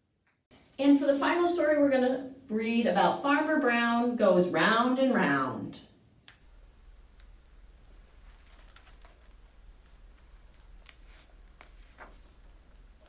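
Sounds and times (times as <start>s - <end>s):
low steady hum: 6.4s - 13.0s
clicks and taps of book handling: 7.1s - 13.0s.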